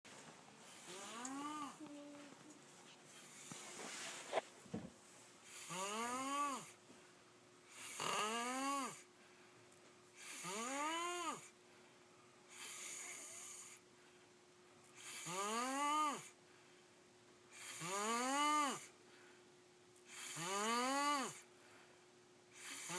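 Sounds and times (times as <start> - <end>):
faint steady hum: 0.1 - 22.9
boy snoring: 0.8 - 2.2, 5.5 - 6.8, 7.7 - 9.1, 10.2 - 11.5, 12.5 - 13.8, 15.0 - 16.4, 17.6 - 18.9, 20.1 - 21.4, 22.6 - 22.9.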